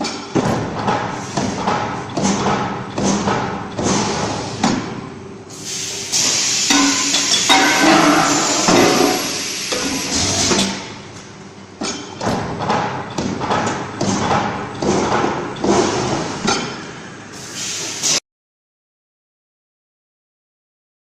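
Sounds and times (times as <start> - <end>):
machine hissing: 5.5 - 11.0, 17.3 - 18.2
pressing machine clattering: 6.2 - 11.0.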